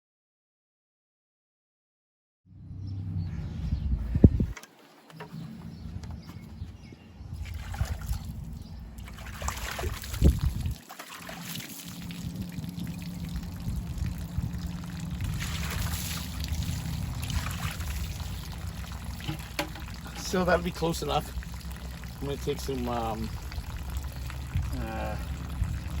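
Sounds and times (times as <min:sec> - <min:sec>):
low rumble: 0:02.5 - 0:04.6, 0:12.0 - 0:22.3, 0:23.0 - 0:26.0
water trickling and pouring: 0:07.4 - 0:26.0.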